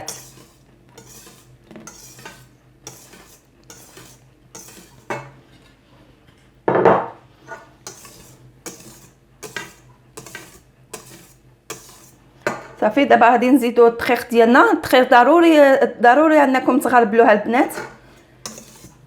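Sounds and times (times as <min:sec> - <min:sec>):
utensil scraping a mixing bowl: 0:00.0 - 0:05.7, 0:07.4 - 0:12.9, 0:17.6 - 0:19.0.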